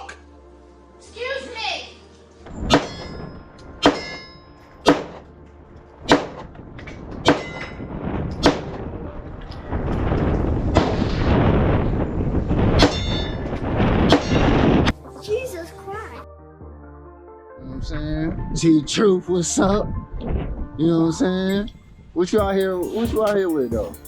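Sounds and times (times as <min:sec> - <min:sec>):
wind buffeting microphone: 0:06.4 - 0:14.9, 0:19.7 - 0:20.8.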